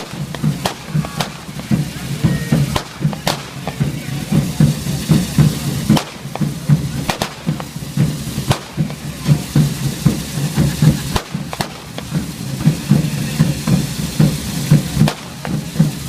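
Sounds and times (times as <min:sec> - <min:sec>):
fast steady drumbeat: 0:00.0 - 0:16.0
firecracker bangs: 0:00.0 - 0:16.0
fireworks fizzing and spraying: 0:00.0 - 0:16.0.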